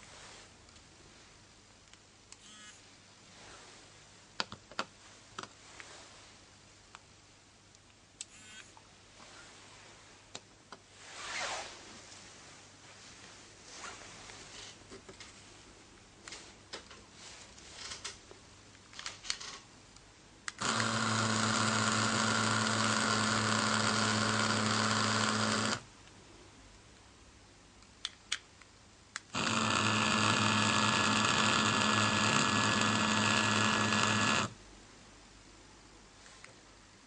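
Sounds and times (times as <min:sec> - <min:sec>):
pager buzzing: 0:02.4 - 0:02.8, 0:08.2 - 0:08.7, 0:20.6 - 0:25.8, 0:29.4 - 0:34.5.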